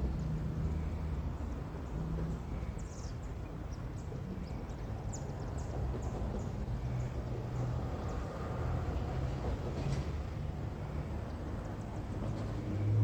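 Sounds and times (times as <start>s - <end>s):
freight train rumbling past: 5.3s - 13.0s.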